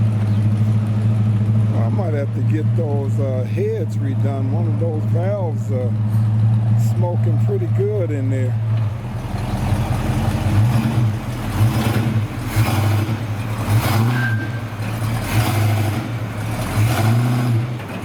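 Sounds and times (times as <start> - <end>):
car engine revving: 8.6 - 18.0.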